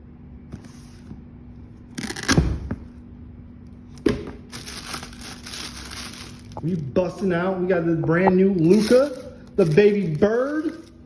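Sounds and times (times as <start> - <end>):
sneakers and packaging rustling: 3.9 - 7.5, 8.1 - 11.0.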